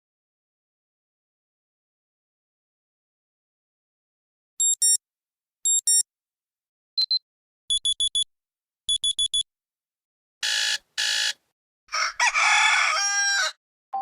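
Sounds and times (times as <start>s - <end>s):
quick high beeps: 4.6s - 5.0s, 5.7s - 6.0s, 7.0s - 8.3s, 8.9s - 9.4s
rooster crowing: 11.9s - 13.6s.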